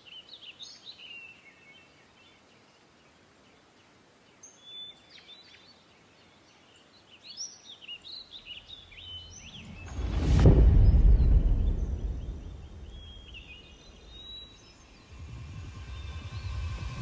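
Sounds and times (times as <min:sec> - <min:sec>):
low steady hiss: 0:00.0 - 0:17.0
birds chirping and whistling: 0:07.4 - 0:17.0.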